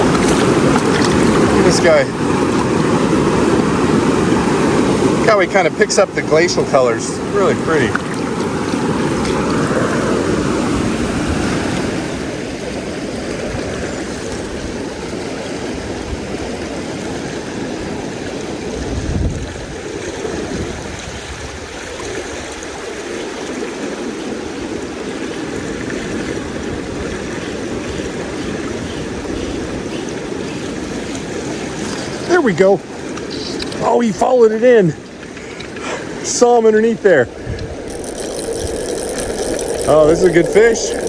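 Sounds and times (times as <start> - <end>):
river water rushing: 0.0 - 15.9.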